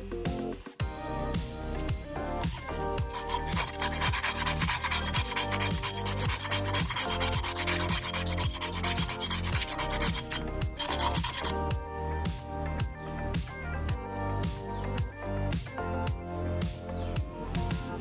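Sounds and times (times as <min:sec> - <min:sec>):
background music with steady beat: 0:00.0 - 0:18.0
sanding wood by hand: 0:02.4 - 0:11.5.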